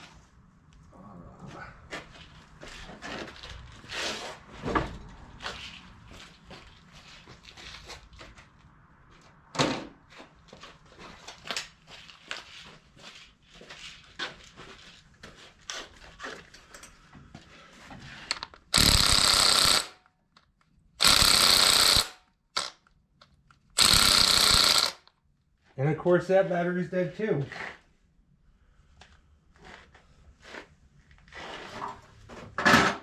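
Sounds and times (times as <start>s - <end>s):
cordless impact gun hammering: 18.8s - 20.0s, 21.0s - 22.8s, 23.8s - 25.1s.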